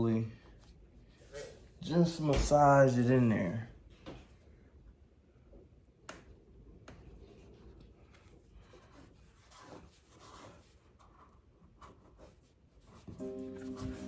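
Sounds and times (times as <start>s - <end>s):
vinyl film rubbing and scratching: 12.3s - 14.0s.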